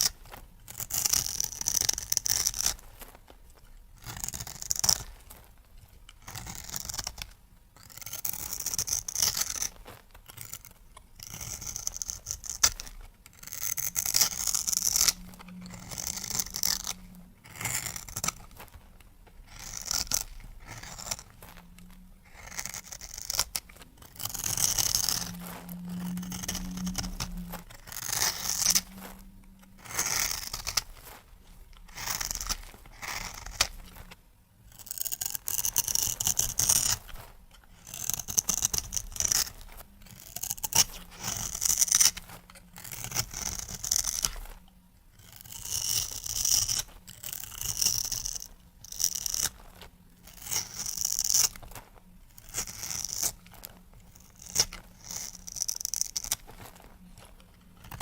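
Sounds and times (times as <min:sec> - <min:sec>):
knife cutting soap: 0:06.1 - 0:29.2, 0:31.7 - 0:34.0, 0:34.7 - 0:44.5, 0:45.2 - 0:51.7.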